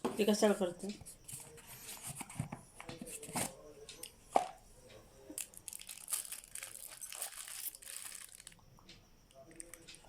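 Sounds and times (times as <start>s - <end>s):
packaging crinkling: 5.4s - 8.6s.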